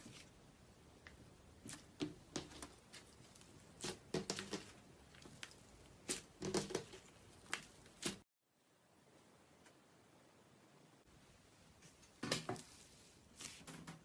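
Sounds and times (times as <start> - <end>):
hands squishing slime: 1.1 - 8.2.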